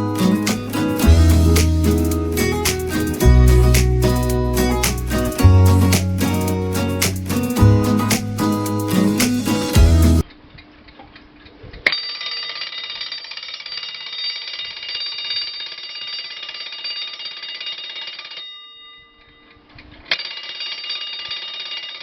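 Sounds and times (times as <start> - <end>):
alarm clock bell ringing: 12.0 - 19.5, 20.2 - 22.0.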